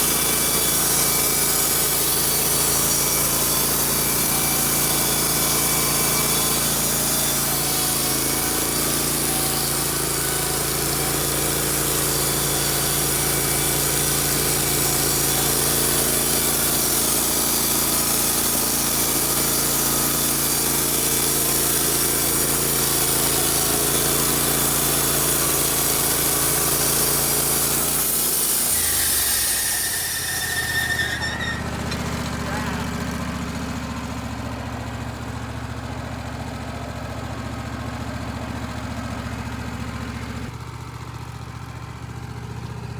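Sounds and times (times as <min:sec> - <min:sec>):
band saw blade cutting log: 0:00.0 - 0:34.4
sawmill engine running: 0:00.0 - 0:42.9.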